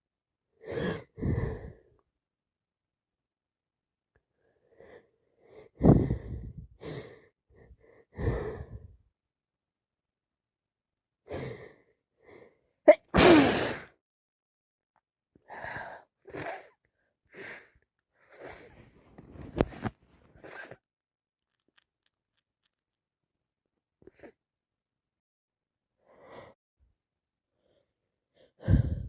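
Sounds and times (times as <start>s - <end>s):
woman sneezing: 12.9s - 13.9s
breathy catching breaths: 27.6s - 29.0s.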